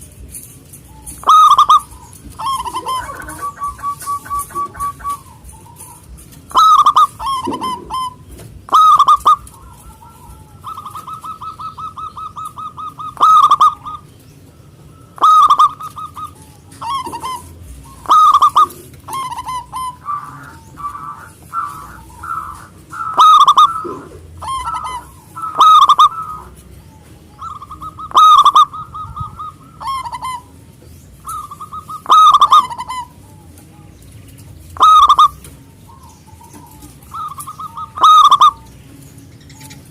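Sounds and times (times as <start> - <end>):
dove cooing: 0.0 - 39.9
dove purring trills: 0.0 - 39.9.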